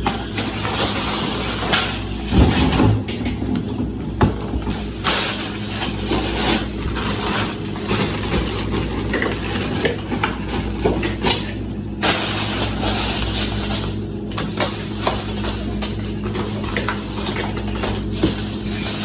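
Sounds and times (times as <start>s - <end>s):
packages rustling: 0.2s - 2.3s, 12.0s - 19.0s.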